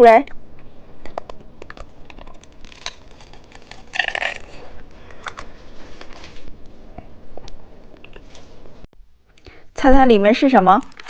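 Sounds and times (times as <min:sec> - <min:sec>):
plastic packaging crinkling: 0:01.6 - 0:06.4, 0:10.8 - 0:11.0.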